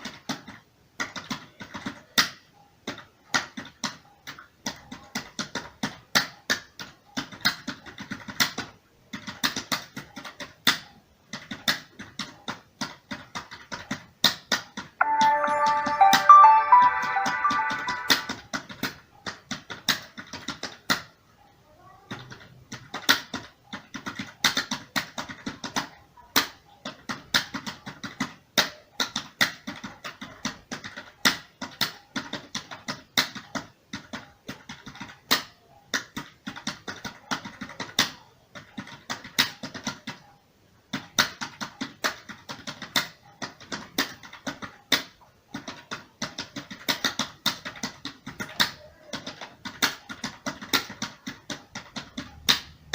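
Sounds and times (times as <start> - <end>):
computer keyboard typing: 2.8 - 10.7, 35.9 - 40.2, 40.9 - 52.9.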